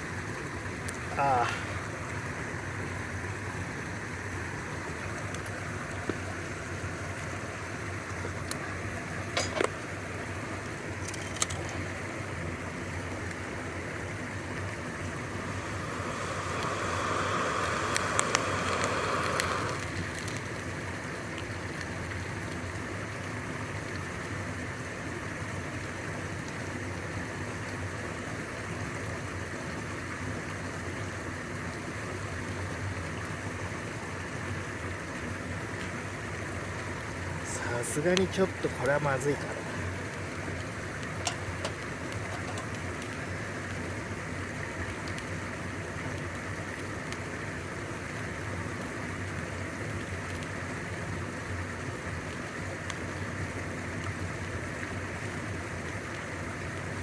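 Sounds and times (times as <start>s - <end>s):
fire crackling: 0.0s - 57.0s
wood fire rushing in chimney: 14.2s - 22.9s, 35.8s - 45.3s.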